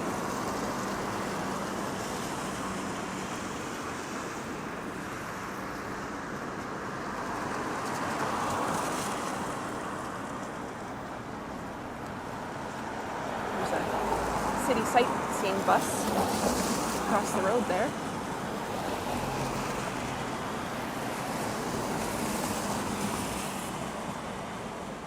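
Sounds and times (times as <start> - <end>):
tyres hissing on wet road: 0.0 - 25.0
vehicle passing: 13.1 - 18.0.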